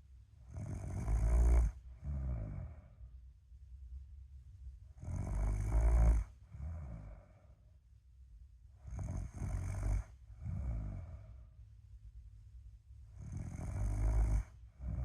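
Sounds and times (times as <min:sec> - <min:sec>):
person snoring: 0:00.5 - 0:02.9, 0:05.0 - 0:07.4, 0:08.8 - 0:11.4, 0:13.2 - 0:15.0
soft breath sound: 0:01.7 - 0:03.2, 0:06.2 - 0:07.8, 0:09.8 - 0:11.7.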